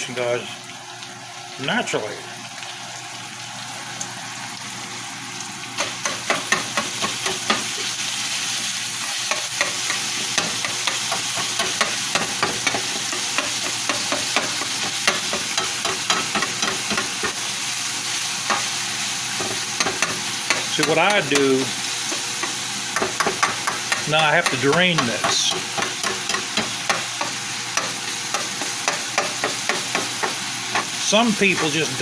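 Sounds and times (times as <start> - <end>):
ground beef sizzling in pan: 2.4 - 32.0
utensil clicking and scraping pan: 9.2 - 17.4, 19.4 - 32.0.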